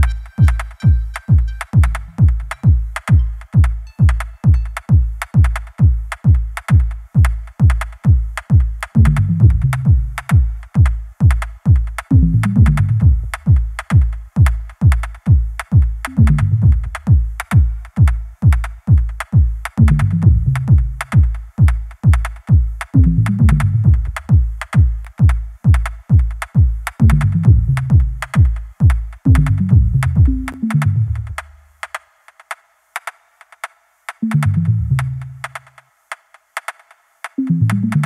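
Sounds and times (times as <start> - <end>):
bass line: 0.0 - 6.4, 9.0 - 10.6, 12.1 - 13.8, 16.0 - 17.7, 19.8 - 21.4, 23.0 - 24.5, 27.0 - 28.5, 29.3 - 31.6, 34.2 - 35.5, 37.4 - 38.0
electronic dance music: 0.0 - 7.4, 12.0 - 13.6, 16.0 - 17.6, 23.0 - 24.8, 27.0 - 31.4, 34.1 - 35.8, 37.3 - 38.0
kick drum: 0.0 - 30.6.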